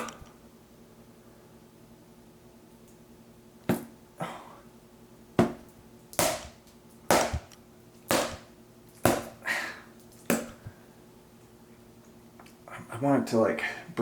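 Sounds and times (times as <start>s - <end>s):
sharp fight hits: 6.2s - 7.5s, 8.1s - 8.5s.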